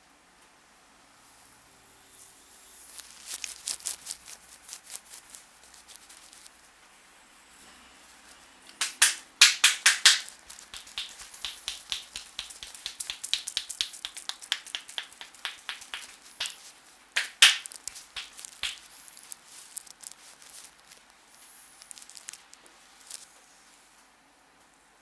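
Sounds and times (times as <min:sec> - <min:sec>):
hand taps and slaps on head: 0:08.8 - 0:18.9.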